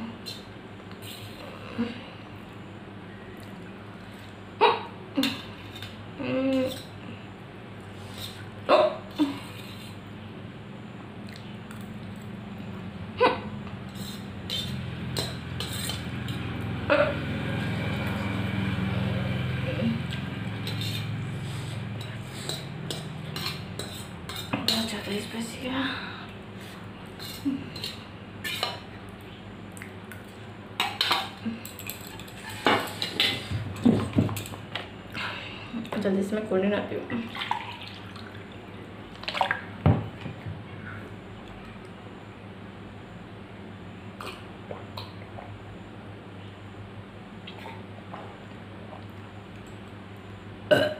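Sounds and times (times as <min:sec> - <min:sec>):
steady low hum: 0:00.0 - 0:50.9
woman hiccuping: 0:04.6 - 0:05.4, 0:08.7 - 0:09.5, 0:13.2 - 0:13.5, 0:16.9 - 0:17.2, 0:50.7 - 0:50.9.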